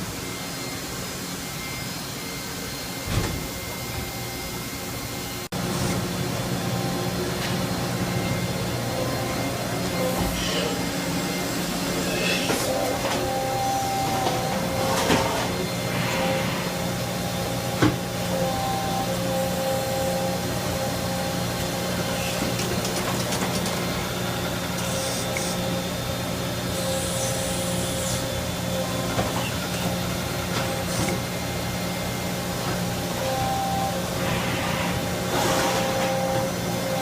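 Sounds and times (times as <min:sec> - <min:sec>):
machining center humming and whining: 0:00.0 - 0:37.0.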